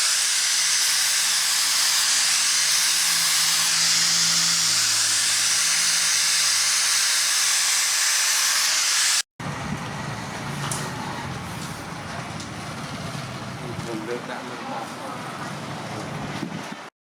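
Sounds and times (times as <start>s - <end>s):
loud steady hiss: 0.0s - 9.2s.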